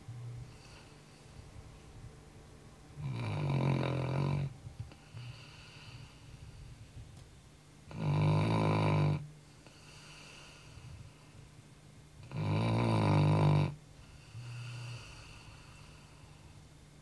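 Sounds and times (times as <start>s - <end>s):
dog snoring: 0.4s - 1.2s, 3.0s - 6.4s, 7.9s - 11.0s, 12.2s - 16.3s.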